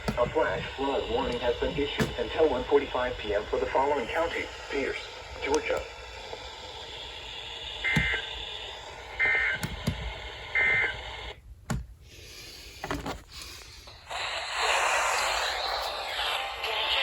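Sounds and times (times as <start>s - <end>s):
radio clicks: 0.0s - 4.4s, 5.4s - 6.4s, 7.8s - 8.3s, 9.1s - 11.8s
radio program audio: 0.0s - 11.4s.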